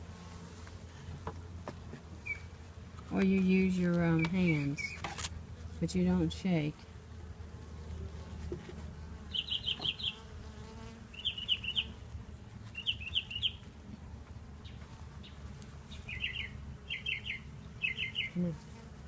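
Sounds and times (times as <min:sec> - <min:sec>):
bees buzzing: 0:00.0 - 0:13.8
songbird singing: 0:02.2 - 0:02.6, 0:03.2 - 0:05.1, 0:09.2 - 0:10.3, 0:11.1 - 0:12.0, 0:12.6 - 0:18.6.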